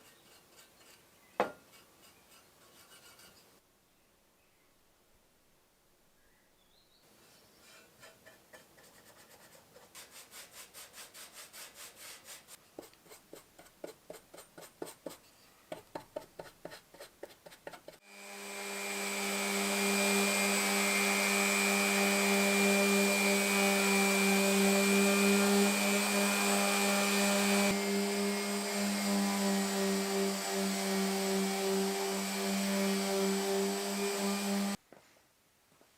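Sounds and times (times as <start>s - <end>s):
hand rubbing on wood: 7.2s - 18.0s
electric power tool whining: 18.0s - 34.8s.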